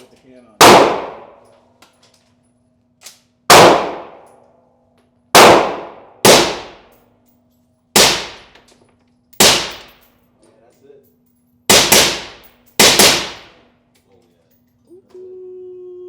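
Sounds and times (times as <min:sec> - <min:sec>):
gunshots echoing indoors: 0:00.6 - 0:01.5, 0:03.5 - 0:04.4, 0:05.4 - 0:07.0, 0:08.0 - 0:08.6, 0:09.4 - 0:10.1, 0:11.7 - 0:13.7.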